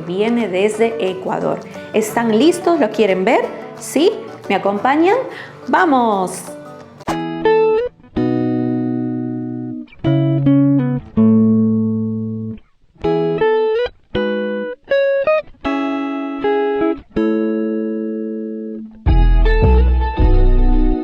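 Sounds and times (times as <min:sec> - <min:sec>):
plucked guitar chords: 0:00.0 - 0:21.0.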